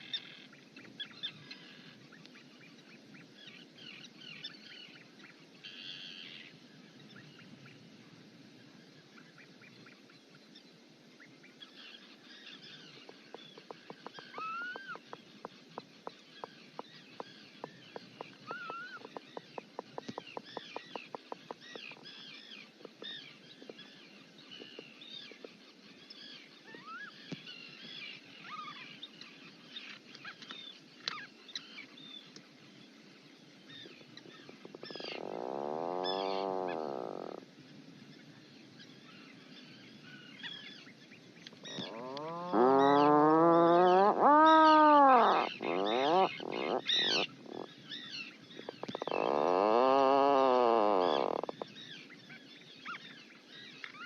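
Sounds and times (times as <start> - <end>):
drawn-out rising and falling call: 12.8 - 23.2, 34.7 - 37.4, 41.6 - 52.2
high bird chirps: 13.5 - 22.2.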